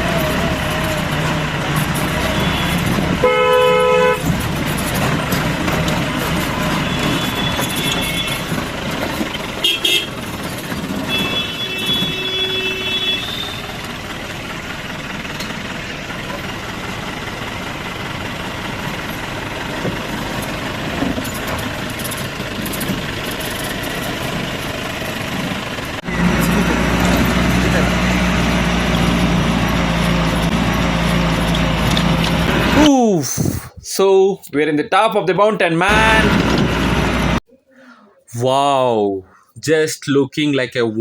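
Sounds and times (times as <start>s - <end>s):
off-road vehicle rumbling and rattling: 0.0s - 33.8s, 35.8s - 37.4s
vehicle horn toots: 2.1s - 4.4s, 6.6s - 8.6s, 9.6s - 10.3s, 10.9s - 13.8s.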